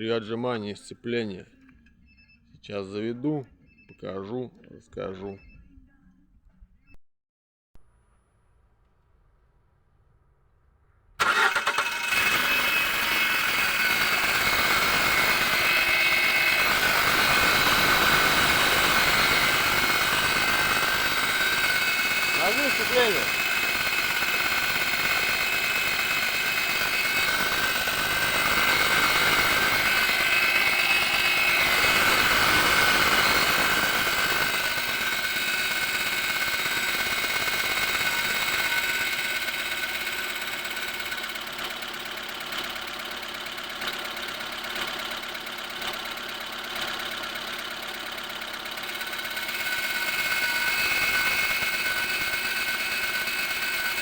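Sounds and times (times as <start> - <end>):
clutch whistle and hum: 11.2 - 42.7, 46.8 - 54.0
car engine idling: 11.2 - 54.0.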